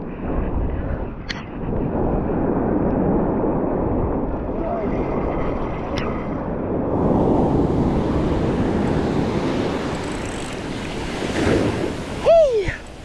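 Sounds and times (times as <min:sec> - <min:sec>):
wind buffeting microphone: 0:00.0 - 0:13.0
ocean surf breaking: 0:04.0 - 0:13.0.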